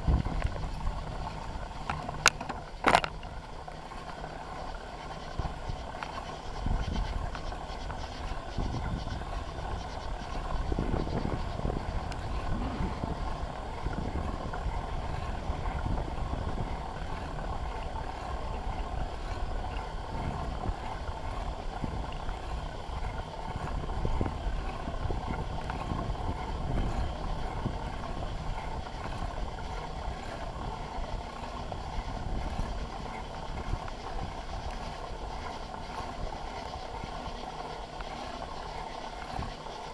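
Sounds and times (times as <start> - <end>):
bicycle tyres rolling: 0.0 - 39.9
bike rattles and knocks: 1.9 - 3.2.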